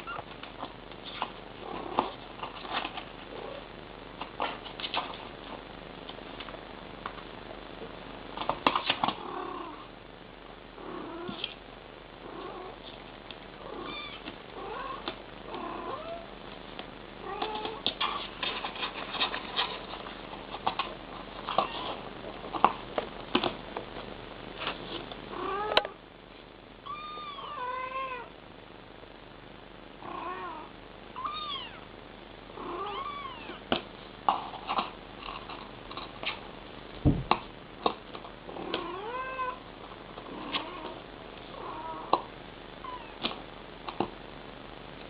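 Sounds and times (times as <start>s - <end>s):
cat trilling: 13.7s - 16.3s, 26.8s - 28.3s, 30.1s - 31.8s, 32.6s - 33.6s.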